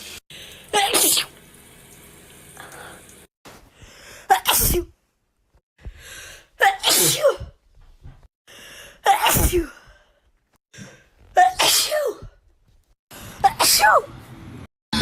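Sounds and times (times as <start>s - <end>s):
woman sneezing: 4.3s - 4.9s, 6.6s - 7.5s, 9.0s - 9.8s, 11.4s - 12.3s, 13.4s - 14.1s.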